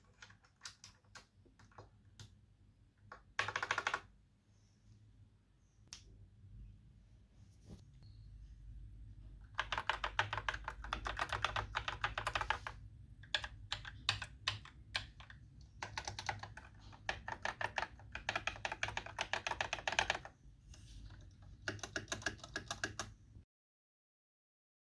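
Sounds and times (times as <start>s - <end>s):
mechanical keyboard typing: 3.1s - 4.1s, 9.5s - 20.3s, 21.0s - 23.2s.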